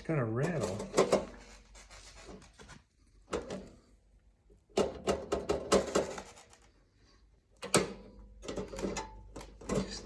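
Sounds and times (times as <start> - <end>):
metal cover rattling: 0.4 - 1.5.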